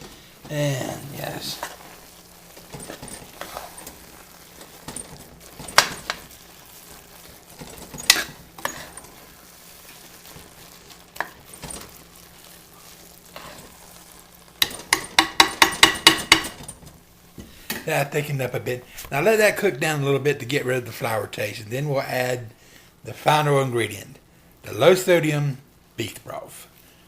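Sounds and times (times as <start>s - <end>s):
spoon stirring in pot: 0.0s - 17.0s
spoon knocking on pot: 14.6s - 16.7s.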